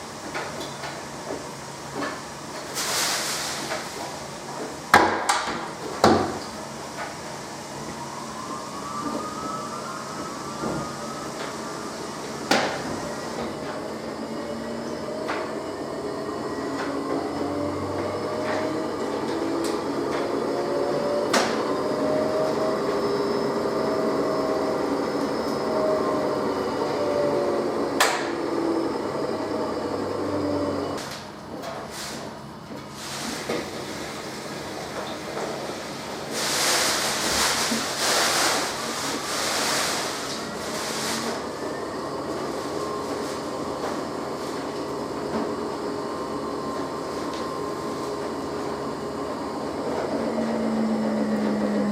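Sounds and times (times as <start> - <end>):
water-like hiss: 2.8 - 3.7
washing machine motor humming: 5.7 - 31.5, 38.7 - 51.9
faint drum whine: 7.2 - 13.3.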